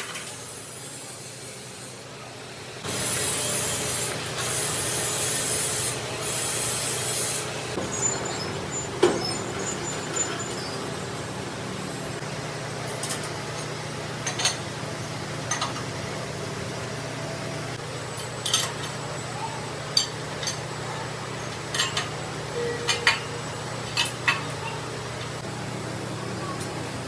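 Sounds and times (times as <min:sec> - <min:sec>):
workshop machine humming: 0:00.0 - 0:27.0
abrasive rubbing on metal: 0:04.6 - 0:11.2.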